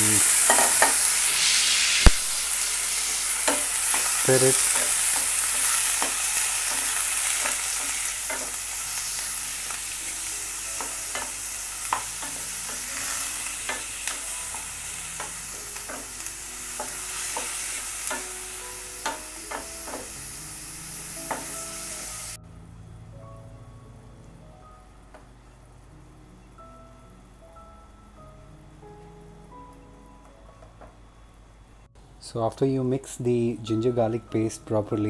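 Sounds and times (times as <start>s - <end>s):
liver sizzling in oil: 0.0s - 22.4s
utensil clicking against pan: 3.4s - 8.7s, 10.8s - 16.2s, 16.8s - 18.4s, 19.0s - 20.2s.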